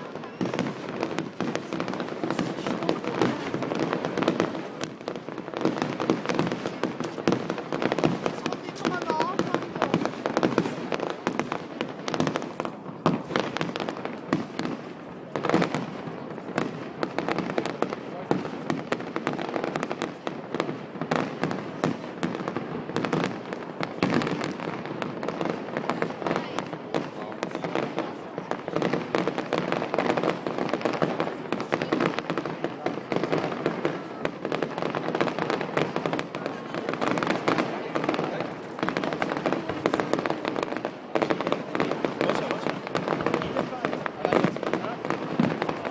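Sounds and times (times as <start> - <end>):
fireworks bangs and crackles: 0.0 - 45.9.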